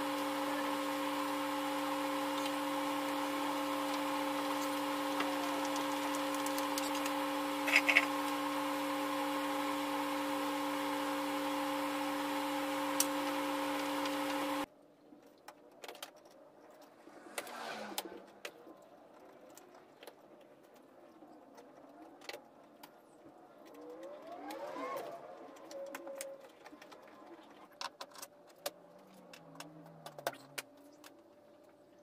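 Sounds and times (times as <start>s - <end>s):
steady electric hum: 0.0s - 14.7s.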